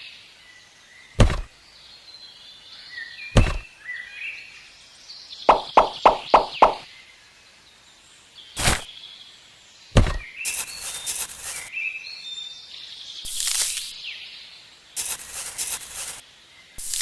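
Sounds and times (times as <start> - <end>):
birds chirping: 1.0 - 4.4, 5.3 - 6.9, 9.8 - 12.1
sharp knocks: 1.2 - 1.5, 3.4 - 3.7, 5.5 - 6.8, 10.0 - 10.3
hissy scraping: 8.6 - 8.9, 10.0 - 11.7, 13.3 - 13.9, 15.0 - 16.2, 16.8 - 17.0.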